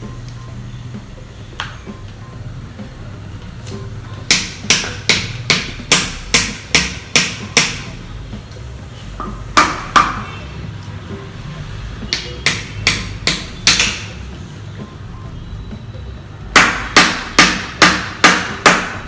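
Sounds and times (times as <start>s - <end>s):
knife knocking on coconut: 4.3s - 7.9s, 9.2s - 10.3s, 12.1s - 14.1s.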